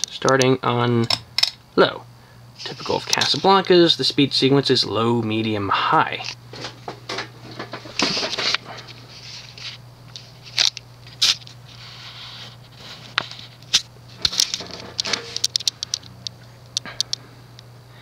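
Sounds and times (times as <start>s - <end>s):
ceiling fan humming: 0.0s - 18.0s
sharp clicks and ticks: 14.5s - 17.7s.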